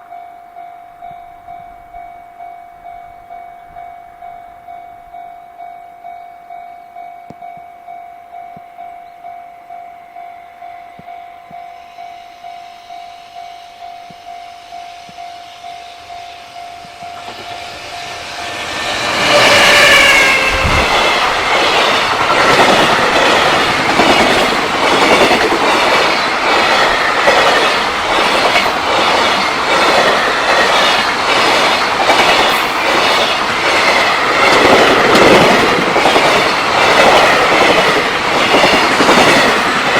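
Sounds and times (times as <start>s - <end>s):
train horn blast: 11.8s - 21.1s
train wheels clattering: 16.7s - 39.9s.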